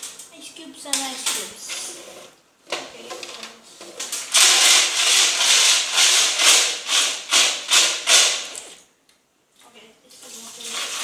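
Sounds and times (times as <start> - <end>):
ice cubes scraping and rattling: 3.1 - 8.5.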